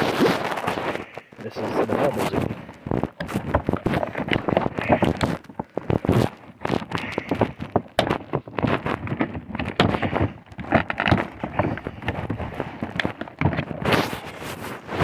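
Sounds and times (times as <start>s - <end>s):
bubble wrap crinkling: 0.0s - 15.0s.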